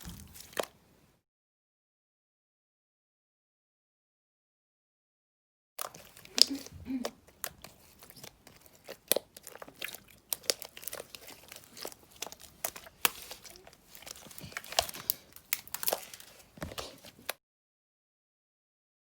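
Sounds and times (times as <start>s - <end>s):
slime squishing and crackling: 0.0s - 0.8s, 5.8s - 17.4s.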